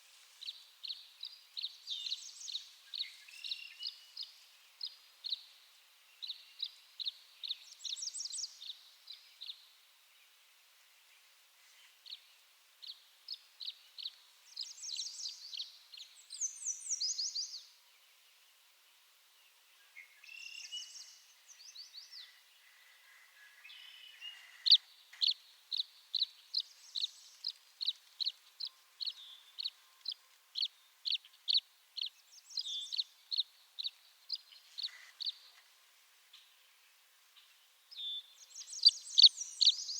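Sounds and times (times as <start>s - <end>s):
swallow chirping and twittering: 24.2s - 35.5s, 38.4s - 39.9s.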